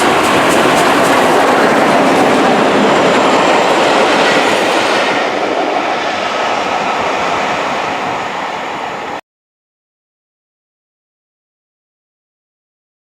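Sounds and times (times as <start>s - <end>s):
train wheels clattering on rails: 0.0s - 8.2s.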